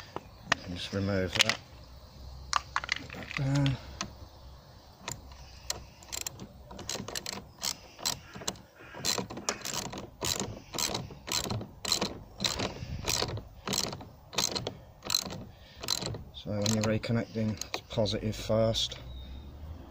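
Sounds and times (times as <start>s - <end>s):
socket ratchet clicking: 5.0s - 17.9s.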